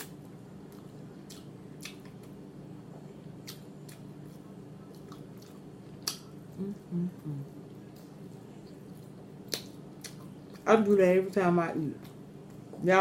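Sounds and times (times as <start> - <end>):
person chewing food: 0.0 - 11.0
steady low hum: 0.0 - 13.0
person humming mm: 6.5 - 7.6.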